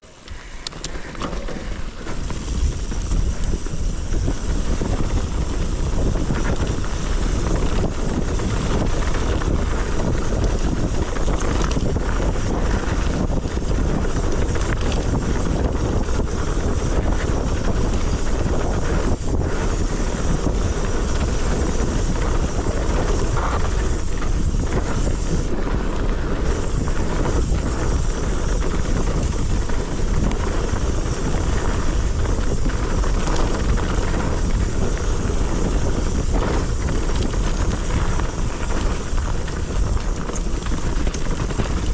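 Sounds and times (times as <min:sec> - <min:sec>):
wind buffeting microphone: 0:00.0 - 0:41.9.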